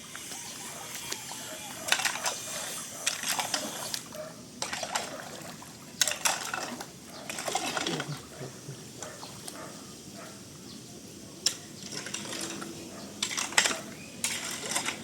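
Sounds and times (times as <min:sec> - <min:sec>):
stones clattering in shallow water: 0:06.0 - 0:08.2, 0:11.5 - 0:15.0.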